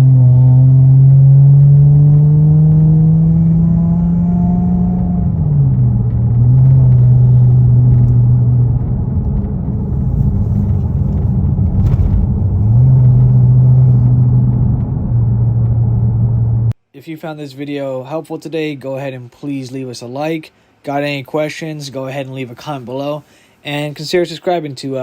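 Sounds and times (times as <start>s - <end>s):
car engine exhaust drone: 0.0s - 16.8s.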